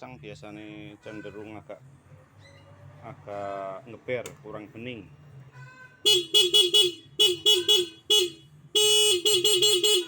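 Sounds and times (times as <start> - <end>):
scooter horn beeping: 1.0 - 1.6, 5.5 - 10.0.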